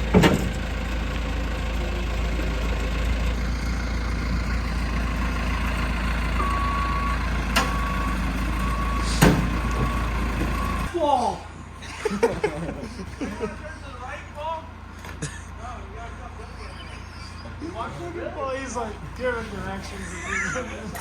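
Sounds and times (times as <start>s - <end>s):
heavy vehicle engine running: 0.0s - 21.0s.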